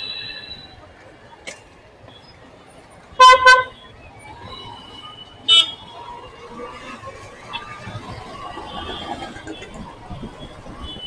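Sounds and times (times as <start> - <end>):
traffic noise: 0.0 - 11.0
vehicle horns tooting: 3.2 - 3.8, 4.8 - 6.0, 10.7 - 11.0.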